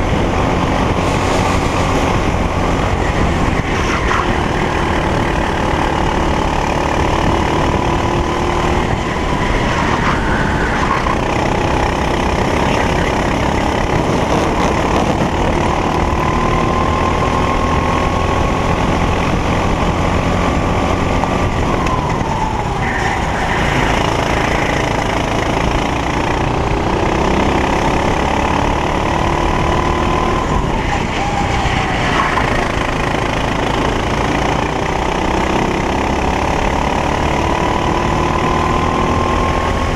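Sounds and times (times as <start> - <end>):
kart engine running hard: 0.0 - 39.9.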